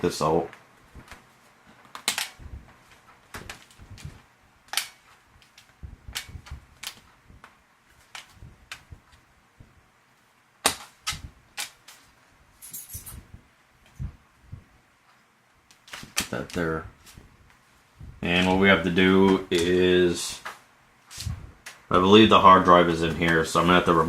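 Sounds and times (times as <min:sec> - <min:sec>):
laptop handling clicks and knocks: 0:01.8 - 0:09.0, 0:10.6 - 0:12.1.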